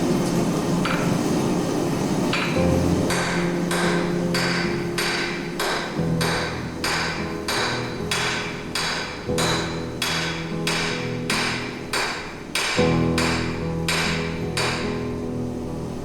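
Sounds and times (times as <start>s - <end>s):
hammer striking hot steel on anvil: 0.8s - 1.2s, 2.3s - 15.0s.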